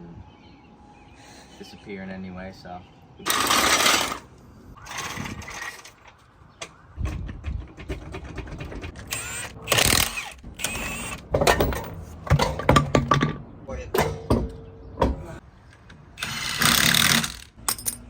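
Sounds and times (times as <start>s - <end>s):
hand tools ratcheting and clattering: 3.3s - 4.2s, 7.0s - 13.4s, 14.0s - 15.3s, 16.2s - 18.0s.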